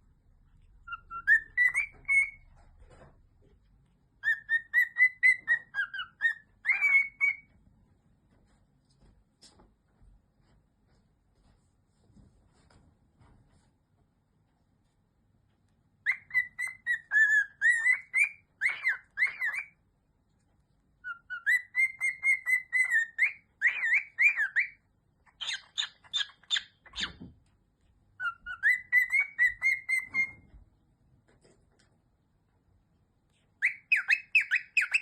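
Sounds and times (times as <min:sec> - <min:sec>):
harsh bird chirps: 0:00.8 - 0:02.6, 0:04.2 - 0:07.5, 0:16.0 - 0:19.8, 0:21.0 - 0:27.3, 0:28.2 - 0:30.5, 0:33.6 - 0:35.0
pet bird whistling tune: 0:00.8 - 0:02.6, 0:04.2 - 0:07.5, 0:16.0 - 0:19.8, 0:21.0 - 0:27.2, 0:28.2 - 0:30.5, 0:33.6 - 0:35.0.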